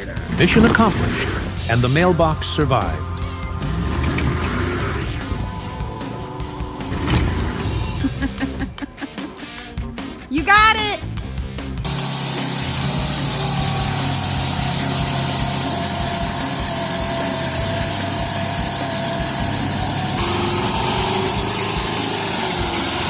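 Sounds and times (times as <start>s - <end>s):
heavy truck engine running: 0.0s - 8.1s, 11.8s - 23.0s.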